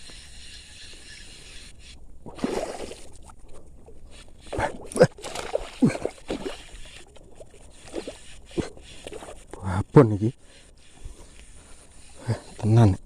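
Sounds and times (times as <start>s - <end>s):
water sloshing and splashing: 2.2s - 9.6s.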